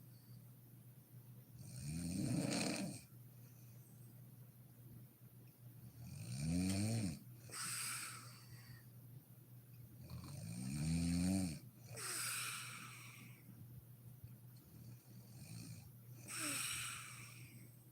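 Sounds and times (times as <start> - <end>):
woman snoring: 1.6 - 3.0, 6.0 - 8.6, 10.1 - 13.4, 15.3 - 17.6.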